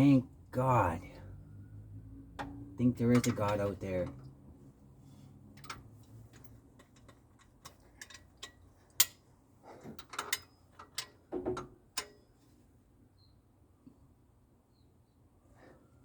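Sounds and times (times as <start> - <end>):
tools and metal parts clinking: 3.0 - 4.2, 5.5 - 9.2, 9.8 - 11.3.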